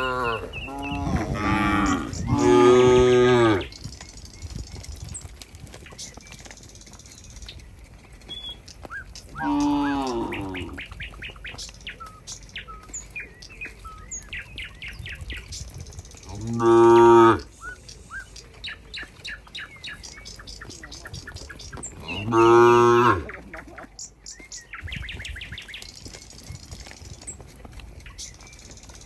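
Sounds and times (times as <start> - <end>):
cows mooing: 0.0 - 3.8, 9.3 - 11.0, 16.2 - 17.5, 21.9 - 23.8
small birds chirping: 0.0 - 29.0.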